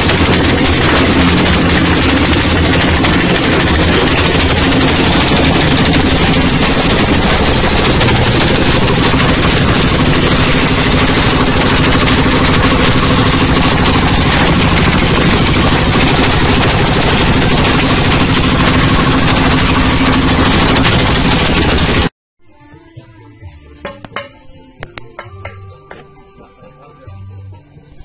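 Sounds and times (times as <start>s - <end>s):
machine drone: 0.0s - 22.1s
shredding machine clattering: 0.0s - 22.1s.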